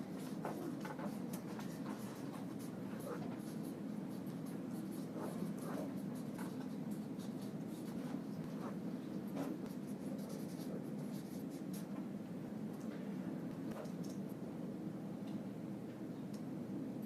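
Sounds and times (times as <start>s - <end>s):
low background hum: 0.0s - 17.0s
pen scratching on surface: 0.2s - 11.9s.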